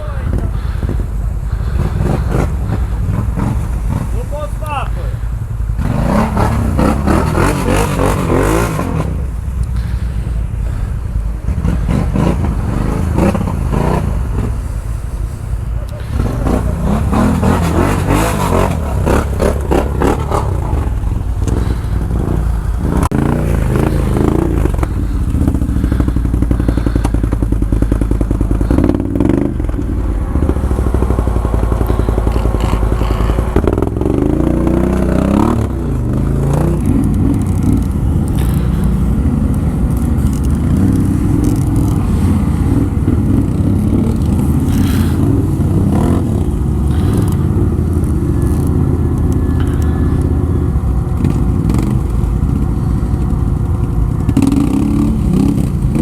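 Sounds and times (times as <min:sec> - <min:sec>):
atv engine revving: 0:00.0 - 0:56.0.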